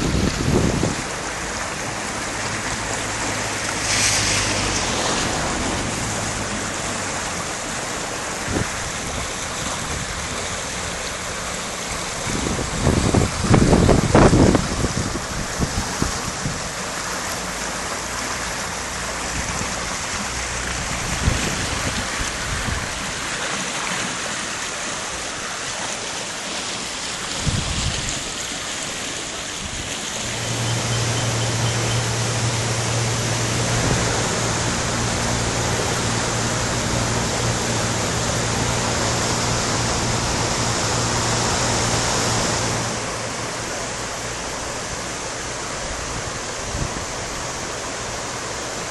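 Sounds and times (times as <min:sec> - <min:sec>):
river water rushing: 0:00.0 - 0:48.9
steady low hum: 0:30.2 - 0:46.3.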